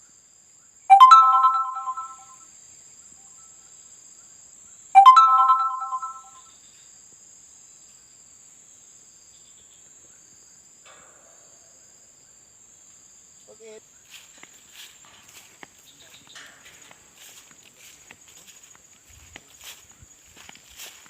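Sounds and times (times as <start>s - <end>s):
phone ringtone chime: 0.9s - 2.3s, 5.0s - 6.4s.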